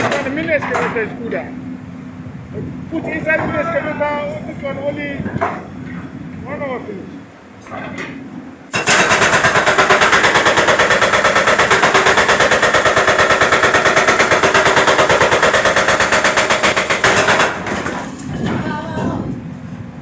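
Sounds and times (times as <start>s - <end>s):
jackhammer on concrete: 8.7s - 18.6s.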